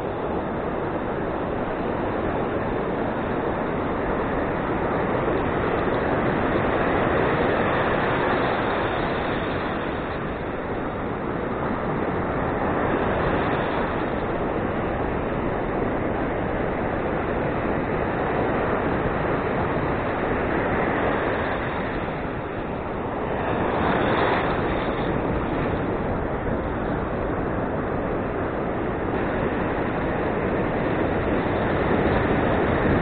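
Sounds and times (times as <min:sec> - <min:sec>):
ocean surf washing on beach: 0:00.0 - 0:33.0
wind on microphone: 0:00.0 - 0:33.0.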